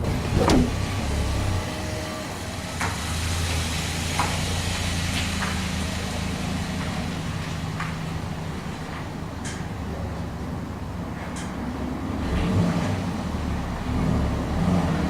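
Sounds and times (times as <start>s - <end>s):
vehicle engine humming: 0.0s - 2.6s.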